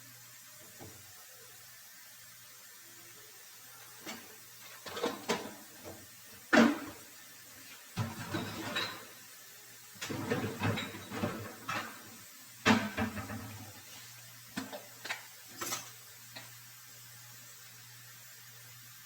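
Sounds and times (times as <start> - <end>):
utensils and containers clattering: 4.0 - 7.0, 8.0 - 9.2, 10.0 - 13.7, 14.6 - 16.0.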